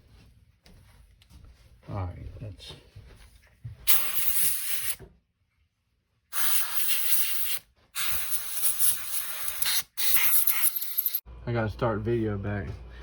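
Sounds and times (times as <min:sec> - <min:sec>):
aerosol can spraying: 0:03.9 - 0:05.0, 0:06.3 - 0:11.2.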